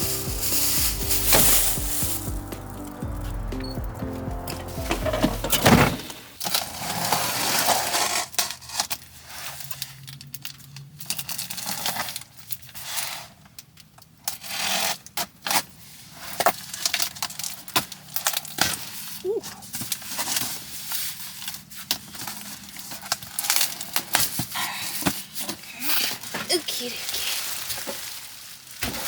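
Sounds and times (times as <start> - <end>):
music: 0.0 - 6.0.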